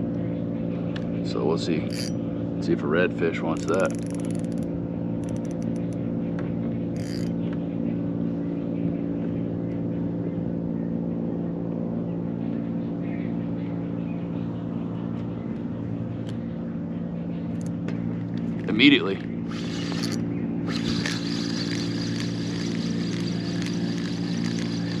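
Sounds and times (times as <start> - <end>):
electric motor humming whine: 1.8 - 2.1, 7.0 - 7.3, 18.4 - 25.0.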